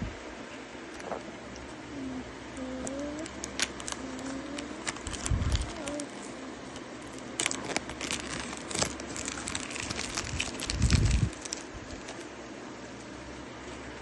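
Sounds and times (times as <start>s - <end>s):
packaging crinkling: 2.6s - 12.4s.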